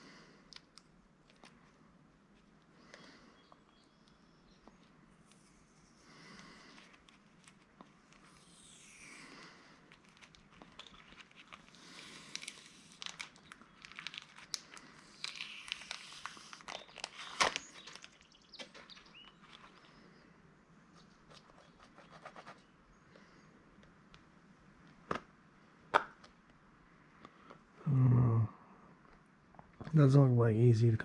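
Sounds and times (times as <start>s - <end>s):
plastic parts scraping and clicking: 9.9s - 19.9s.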